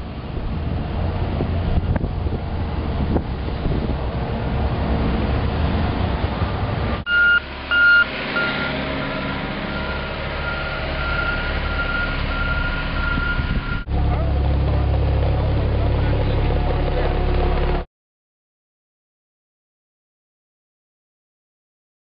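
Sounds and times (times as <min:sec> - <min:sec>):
heavy machinery rumbling: 0:00.0 - 0:17.9
vehicle backup alarm beeping: 0:07.1 - 0:13.9.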